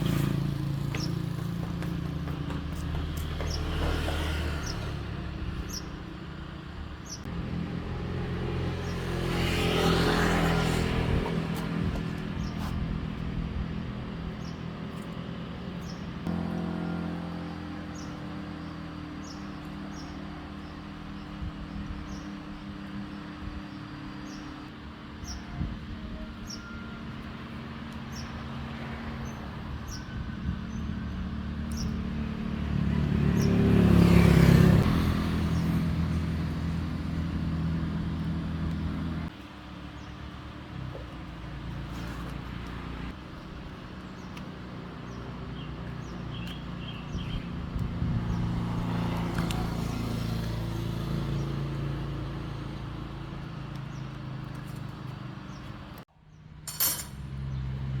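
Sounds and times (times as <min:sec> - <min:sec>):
small engine running: 0:00.0 - 0:05.6.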